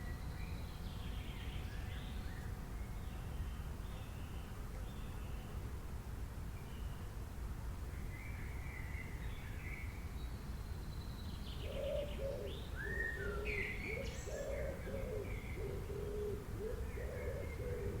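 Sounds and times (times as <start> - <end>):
low background hiss: 0.0 - 18.0
bird cooing: 11.6 - 18.0.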